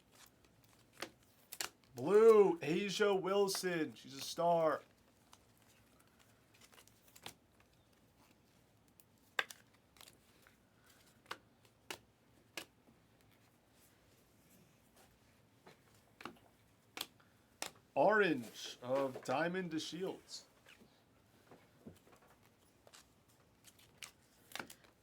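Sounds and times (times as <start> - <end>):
trading cards being handled: 0.1 - 13.5.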